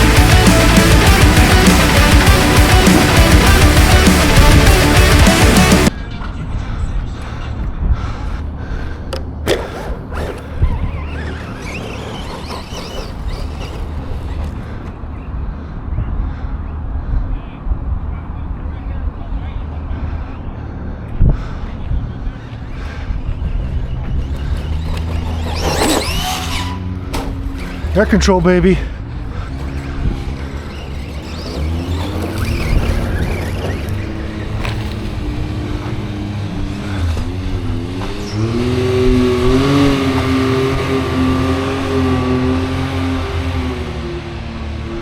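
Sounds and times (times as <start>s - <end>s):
electric motor whining: 9.1s - 14.7s, 24.0s - 28.0s, 29.0s - 44.0s.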